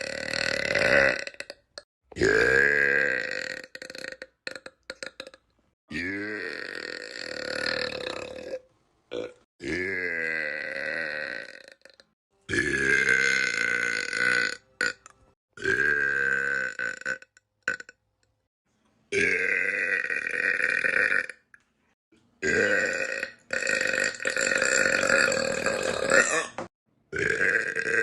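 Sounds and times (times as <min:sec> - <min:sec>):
boy burping: 0:00.0 - 0:15.0, 0:19.2 - 0:21.4, 0:22.4 - 0:28.0.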